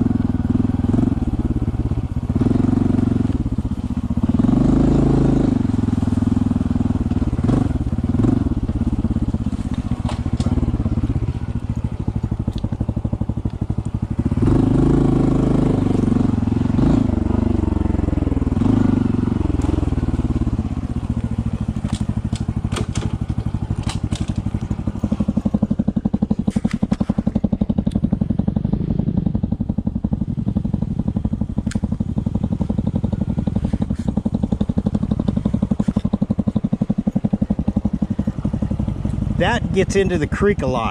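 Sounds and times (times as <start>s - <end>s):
motorcycle engine revving: 0.0s - 40.9s
sharp clicks and ticks: 27.8s - 28.1s, 31.6s - 32.0s.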